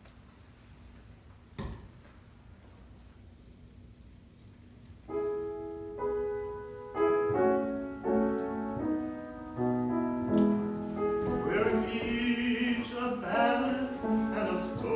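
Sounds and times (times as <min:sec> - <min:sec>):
piano playing slow chords: 0:05.0 - 0:14.9.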